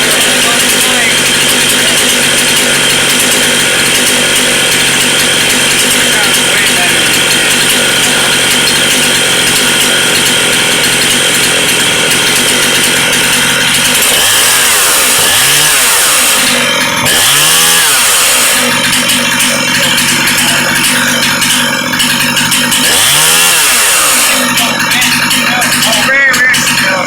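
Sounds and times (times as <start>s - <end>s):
chainsaw running at high revs: 0.0s - 27.0s.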